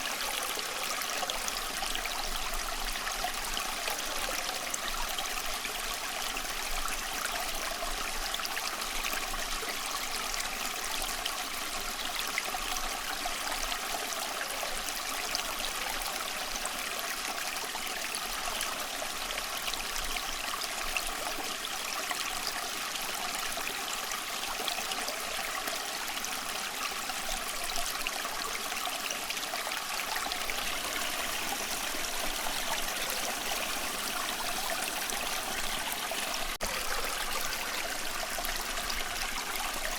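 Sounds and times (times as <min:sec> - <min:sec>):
running water flowing: 0:00.0 - 0:08.0, 0:23.2 - 0:39.9.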